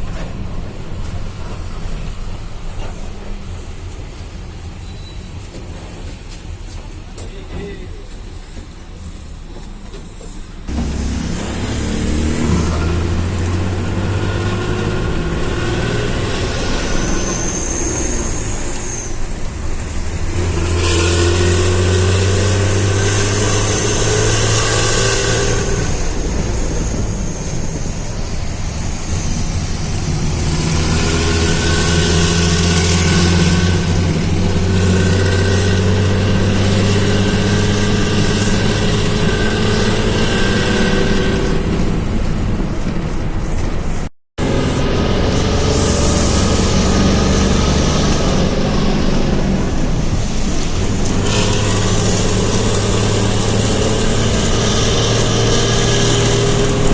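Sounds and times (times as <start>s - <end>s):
bus diesel engine pulling away: 0.0s - 56.9s.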